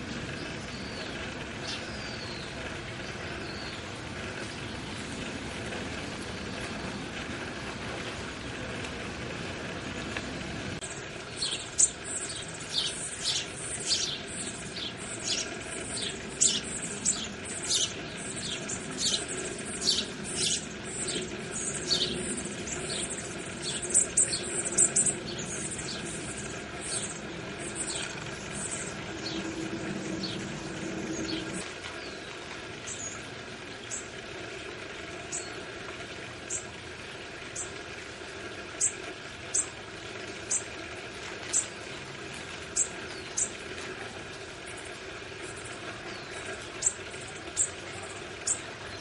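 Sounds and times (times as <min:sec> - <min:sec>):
small birds chirping high: 0:00.0 - 0:05.3, 0:10.3 - 0:34.2, 0:38.8 - 0:39.8, 0:41.4 - 0:41.8, 0:42.7 - 0:43.9, 0:44.8 - 0:49.0
low background rumble: 0:00.0 - 0:49.0.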